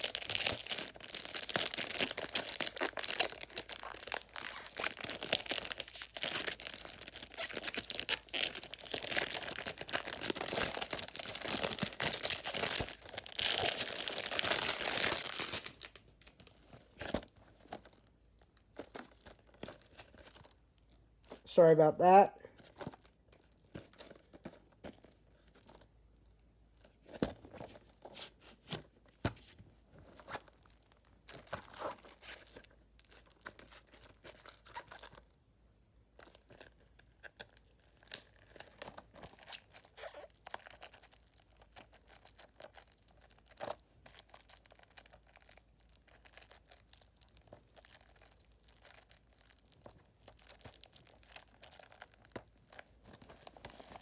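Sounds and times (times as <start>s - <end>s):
plastic wrapping crinkling: 0.0s - 21.5s, 22.5s - 27.8s, 30.0s - 35.3s, 36.2s - 54.0s.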